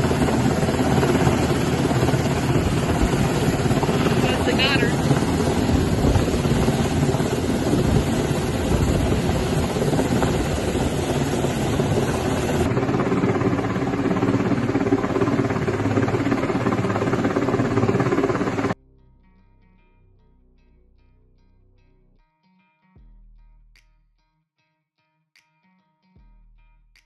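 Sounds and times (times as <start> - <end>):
helicopter rotors and engines: 0.0 - 18.8.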